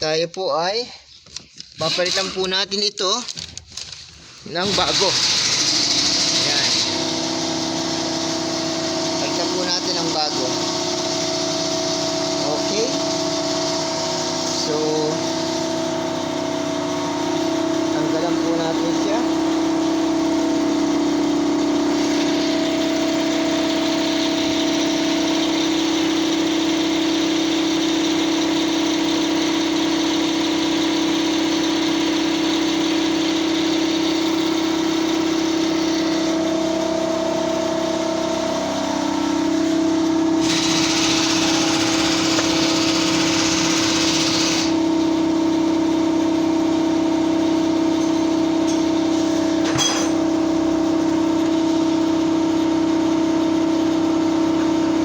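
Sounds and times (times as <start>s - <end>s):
motor humming: 33.2s - 55.0s
loud hissing rattling noise: 40.4s - 44.9s.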